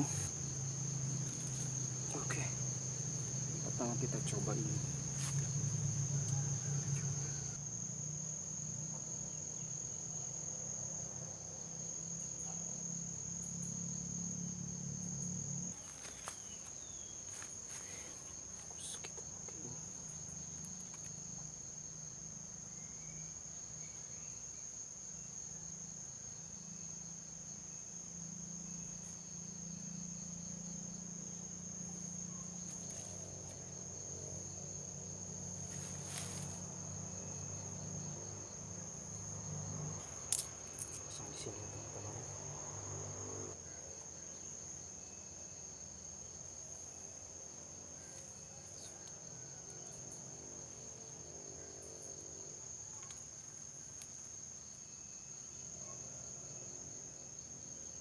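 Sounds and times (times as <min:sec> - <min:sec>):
insects shrilling: 0:00.0 - 0:10.1, 0:13.1 - 0:25.3, 0:28.6 - 0:43.6.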